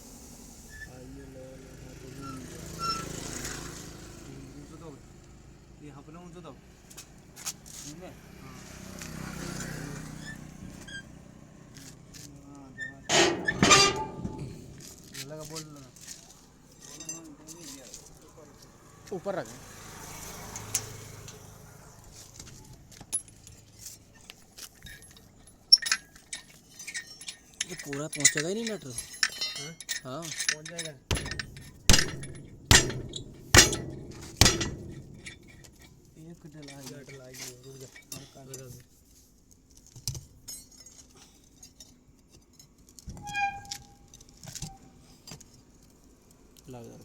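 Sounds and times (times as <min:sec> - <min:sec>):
metallic clinks of tools: 0:13.1 - 0:15.2, 0:23.1 - 0:38.8
struck steel ringing: 0:13.1 - 0:15.2, 0:25.8 - 0:36.2.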